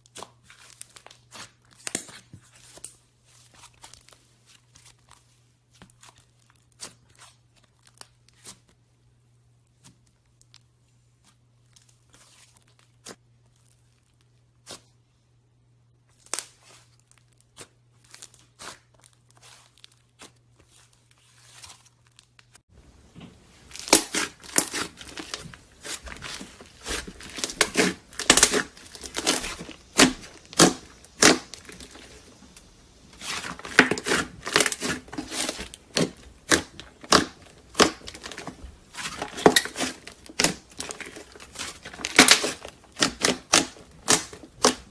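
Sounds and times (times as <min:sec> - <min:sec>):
slime crackling and popping: 0:16.2 - 0:44.9.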